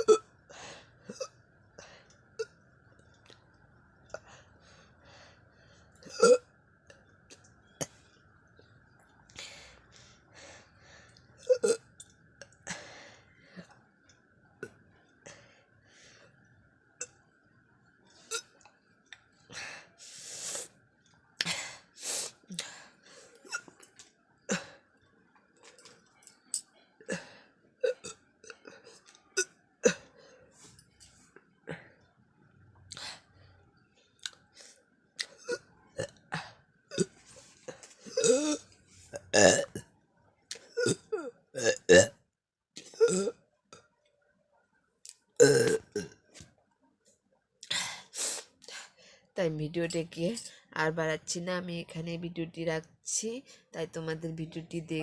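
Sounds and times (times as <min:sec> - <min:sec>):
person coughing and retching: 0:00.0 - 0:00.3, 0:06.1 - 0:06.5, 0:11.4 - 0:11.9, 0:29.4 - 0:30.1, 0:35.2 - 0:37.2, 0:38.0 - 0:38.6, 0:39.2 - 0:39.8, 0:40.7 - 0:42.2, 0:42.8 - 0:43.4, 0:45.4 - 0:46.2
person making mock vomiting sounds: 0:38.1 - 0:38.6.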